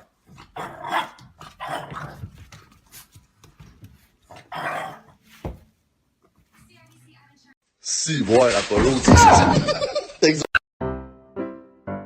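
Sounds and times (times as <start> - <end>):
dog barking and growling: 0.0 - 2.4, 4.3 - 5.2.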